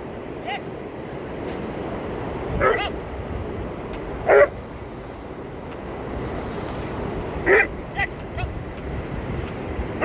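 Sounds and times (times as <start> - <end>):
dog barking: 2.6 - 2.9, 4.2 - 4.6, 7.4 - 7.7.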